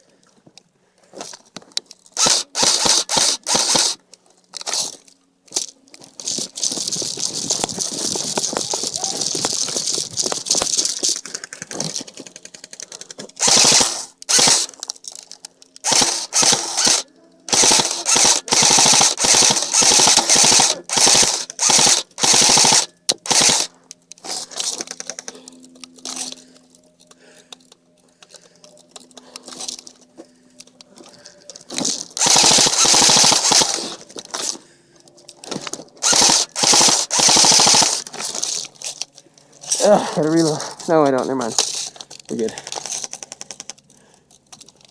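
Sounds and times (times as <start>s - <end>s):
airsoft guns firing bursts: 2.2s - 4.0s, 13.4s - 14.8s, 15.8s - 23.7s, 32.2s - 34.5s, 36.0s - 38.6s.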